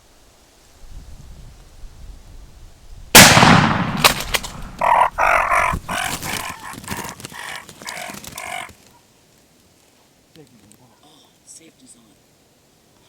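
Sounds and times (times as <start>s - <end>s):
shotgun blast: 3.2s - 4.8s
sharp clicks: 3.8s - 8.7s
short rough broken sounds: 3.9s - 8.5s.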